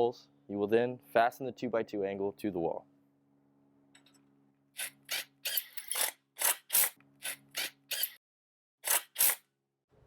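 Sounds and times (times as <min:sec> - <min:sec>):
screws driven rasping: 0:04.8 - 0:08.2, 0:08.8 - 0:09.5.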